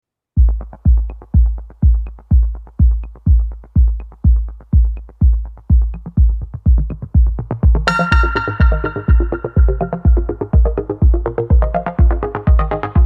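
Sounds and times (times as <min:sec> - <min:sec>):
electronic music: 0:00.4 - 0:13.0
kick drum beat: 0:00.4 - 0:13.0
bright synth chords: 0:07.8 - 0:13.0.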